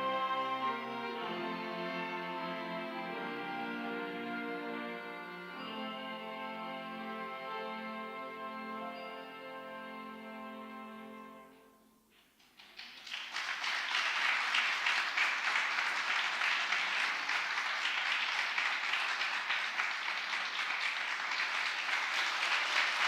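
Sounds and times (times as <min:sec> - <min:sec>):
audience applauding: 0:12.2 - 0:23.0.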